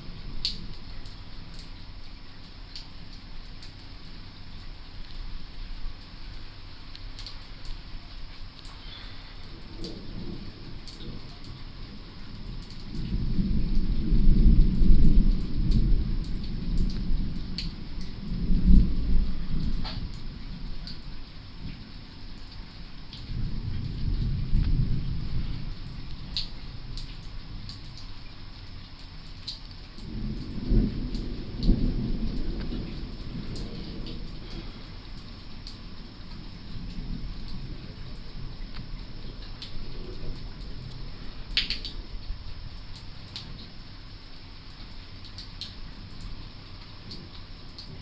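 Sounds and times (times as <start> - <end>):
raindrops ticking: 0.0 - 48.0
steady rain: 0.0 - 48.0
thunder rumbling: 8.8 - 28.4, 29.9 - 44.3.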